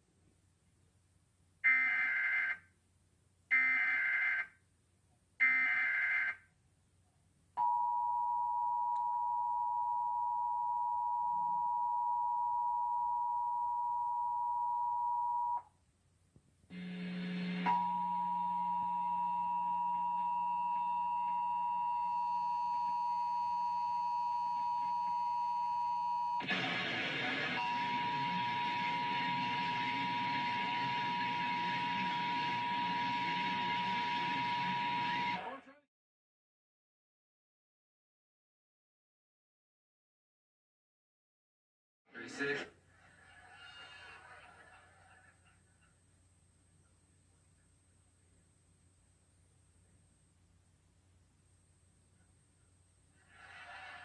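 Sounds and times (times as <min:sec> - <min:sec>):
noisy programme audio: 0:26.4 - 0:35.6.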